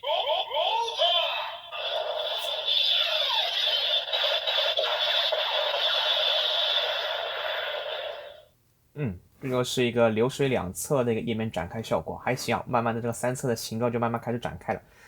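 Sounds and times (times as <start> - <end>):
toy speaker music: 0.0 - 8.4
electronic toy sound effects: 0.0 - 8.5.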